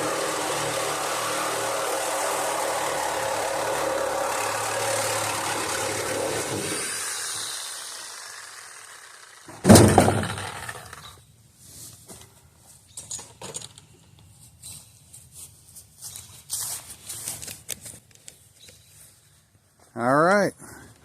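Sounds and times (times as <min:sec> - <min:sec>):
motor running: 0:00.0 - 0:11.2
loud metallic clunk: 0:09.5 - 0:10.8.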